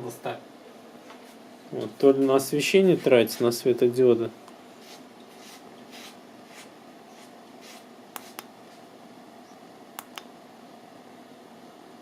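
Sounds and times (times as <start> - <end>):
short sharp clicks: 10.0 - 10.3.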